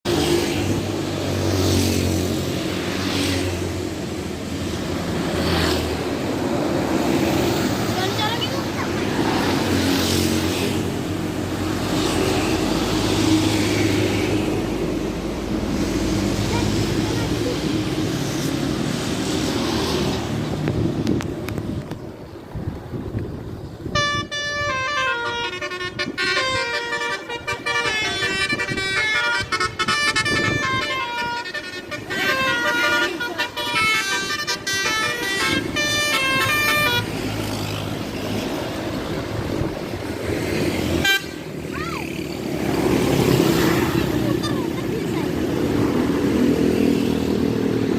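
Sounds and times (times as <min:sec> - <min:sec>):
vehicle rumble: 0:00.0 - 0:47.9
bus engine running: 0:03.6 - 0:47.9
multi-tone air horn melody: 0:23.9 - 0:37.2, 0:41.0 - 0:41.4.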